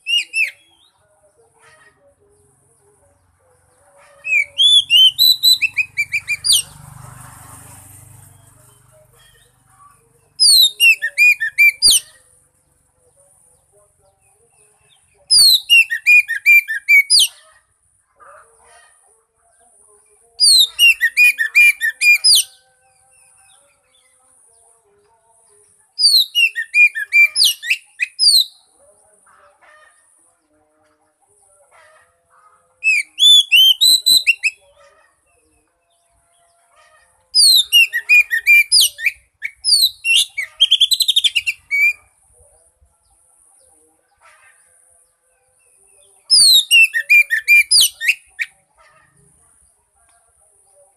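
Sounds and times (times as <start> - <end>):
songbird singing high sliding notes: 0.0 - 0.9, 4.2 - 6.8, 10.2 - 12.3, 14.9 - 17.4, 20.4 - 22.6, 26.0 - 28.7, 32.8 - 34.7, 37.4 - 42.1, 46.2 - 48.6.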